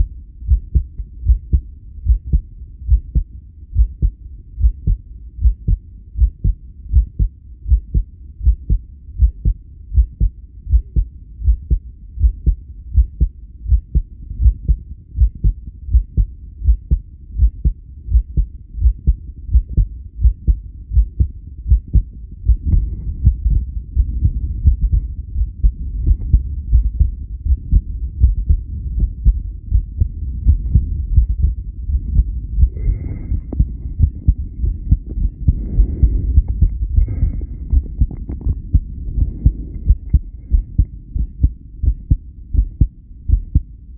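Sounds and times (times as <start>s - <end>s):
heartbeat: 0.0s - 43.8s
low rushing noise: 20.9s - 42.2s.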